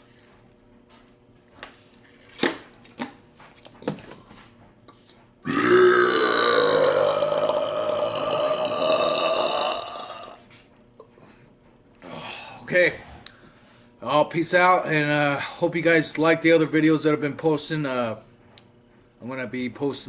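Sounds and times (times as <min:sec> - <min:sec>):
man burping loudly: 0:05.4 - 0:10.4.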